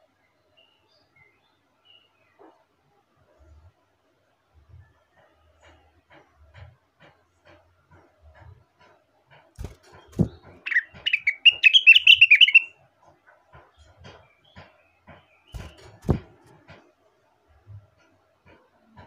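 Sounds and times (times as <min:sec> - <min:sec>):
bird chirping song: 0:00.0 - 0:02.7, 0:08.3 - 0:16.8
dull low thumps: 0:15.6 - 0:16.6.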